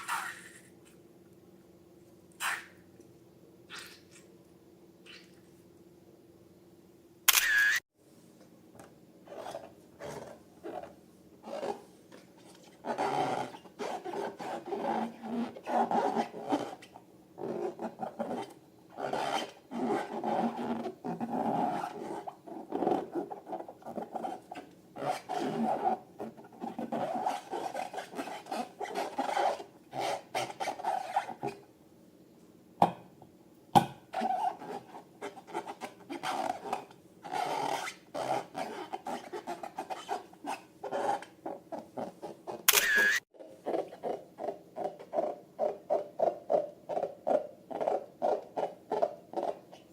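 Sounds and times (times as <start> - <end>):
sharp clicks: 42.7 - 43.2.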